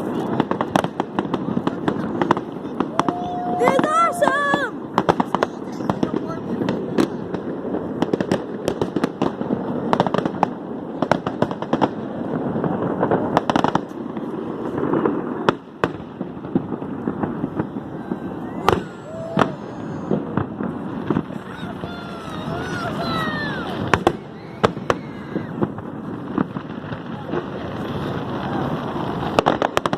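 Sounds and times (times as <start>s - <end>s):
fireworks bangs and crackles: 0.0s - 29.9s.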